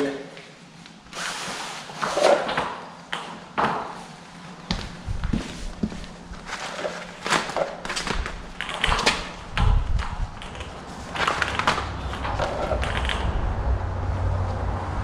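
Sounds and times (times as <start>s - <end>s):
low rumble: 11.6s - 15.0s.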